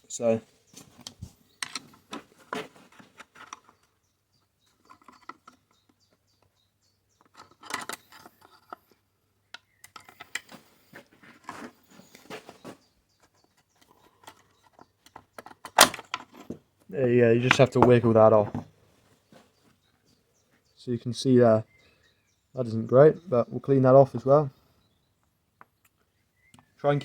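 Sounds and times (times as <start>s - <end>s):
clicks and scrapes of parts handled: 0.8s - 4.0s, 4.7s - 6.0s, 7.2s - 16.6s.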